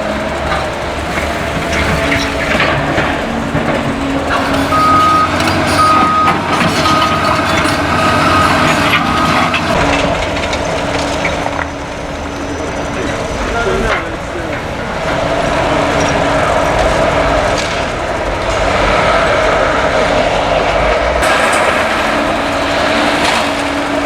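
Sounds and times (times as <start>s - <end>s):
debris knocks and clatter: 0.0s - 24.0s
excavator diesel engine running: 0.0s - 24.0s
reversing alarm beeping: 0.1s - 17.2s.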